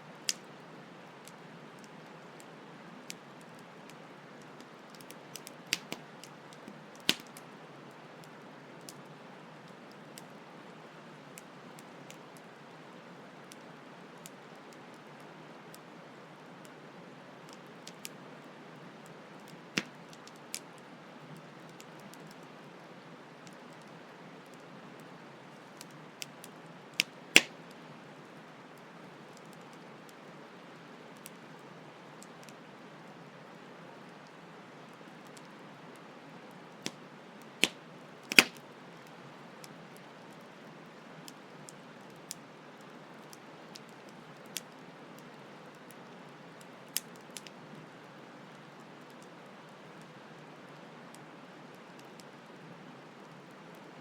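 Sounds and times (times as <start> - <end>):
campfire crackling and popping: 0.2 - 12.7, 17.4 - 18.2, 18.8 - 20.8, 21.4 - 22.8, 23.4 - 30.2, 35.1 - 53.9.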